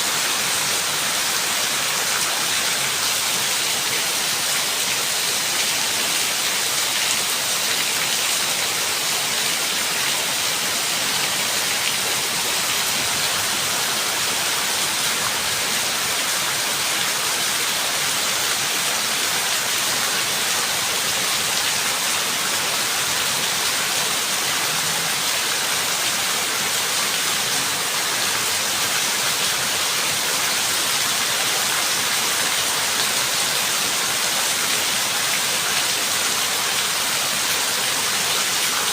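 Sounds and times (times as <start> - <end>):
heavy rain: 0.0 - 38.9.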